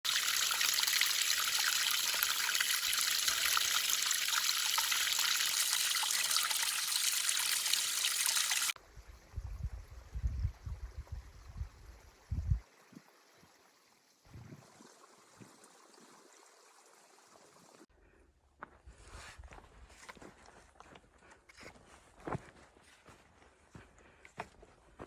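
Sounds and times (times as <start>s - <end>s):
stream water flowing: 0.0s - 8.8s.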